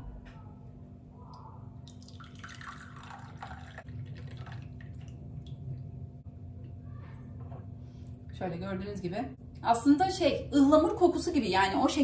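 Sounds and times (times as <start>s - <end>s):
liquid dripping: 1.3s - 6.0s
tea pouring into a cup: 1.8s - 5.6s.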